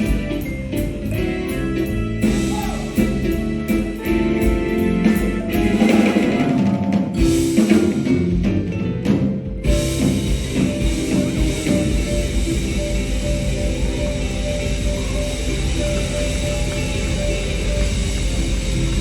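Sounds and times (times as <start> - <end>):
bass: 0.0 - 19.0
drum kit: 0.0 - 19.0
keyboards: 0.0 - 19.0.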